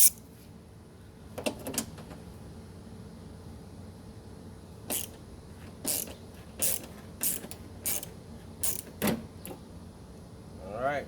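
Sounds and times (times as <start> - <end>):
ratchet wrench clicking: 0.0 - 0.2, 4.9 - 5.2, 5.9 - 8.9.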